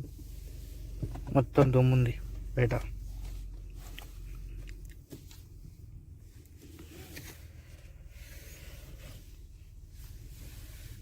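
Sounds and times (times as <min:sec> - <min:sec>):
car cabin rumble: 0:00.0 - 0:08.0.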